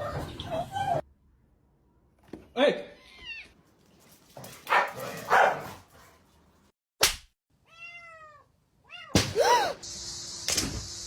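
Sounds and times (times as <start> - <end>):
cat meowing: 7.6 - 9.2.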